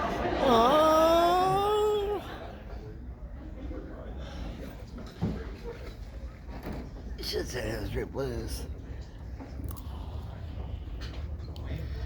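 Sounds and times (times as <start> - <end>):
faint indistinct voices: 0.0 - 12.0
low room rumble: 6.2 - 12.0.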